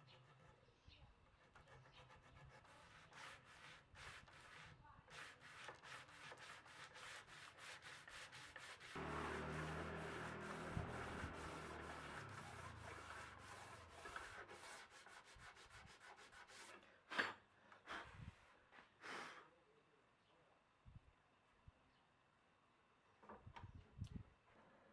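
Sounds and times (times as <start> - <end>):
sanding on wood: 1.4 - 16.8
low hum: 9.0 - 13.8.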